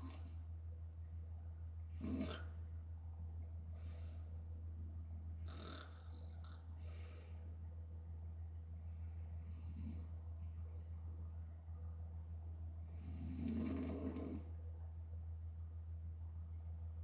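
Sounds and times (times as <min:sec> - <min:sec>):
woman snoring: 0:00.0 - 0:00.4, 0:02.0 - 0:02.4, 0:05.4 - 0:06.6, 0:13.0 - 0:14.5
low hum: 0:00.0 - 0:17.0
airy breathing: 0:06.7 - 0:07.6.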